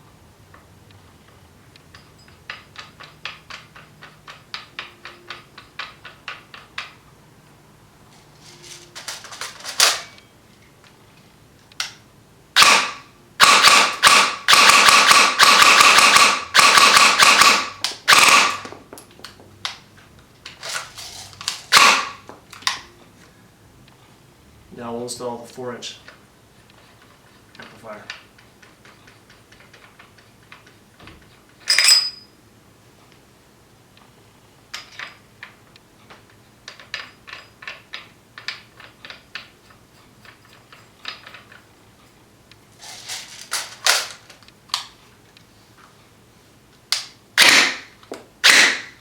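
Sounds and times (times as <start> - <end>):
airsoft rifle firing: 12.6 - 18.7, 21.6 - 22.2, 47.4 - 49.0.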